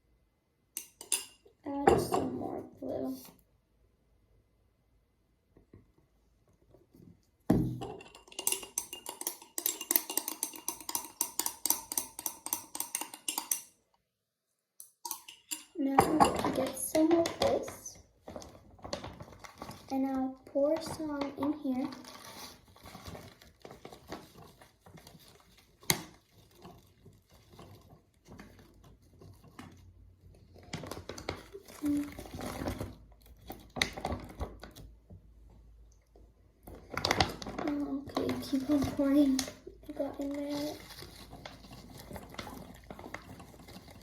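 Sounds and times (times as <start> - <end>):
utensil clinking against cup: 0.8 - 2.3, 7.8 - 13.8, 14.8 - 17.4.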